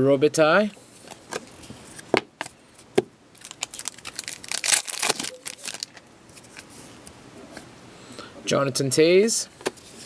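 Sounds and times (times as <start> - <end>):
cards and wrapper crinkling: 3.4 - 6.6.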